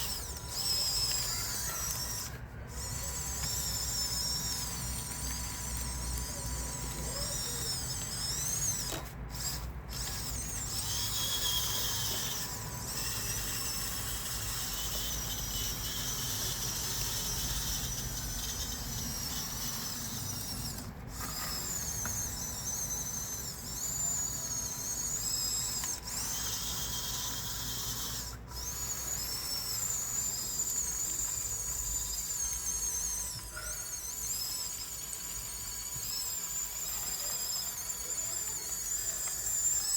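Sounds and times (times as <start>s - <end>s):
small electric motors whining: 0.0s - 39.9s.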